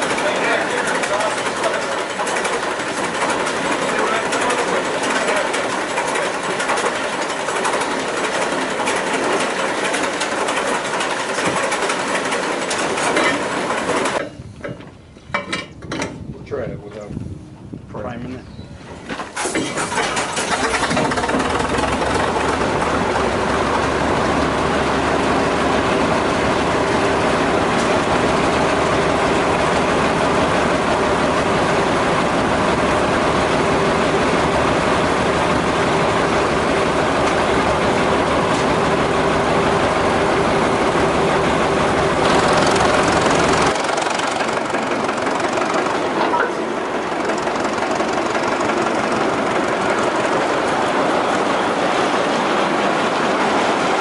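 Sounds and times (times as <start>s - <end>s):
deep engine rumble: 19.9s - 53.8s.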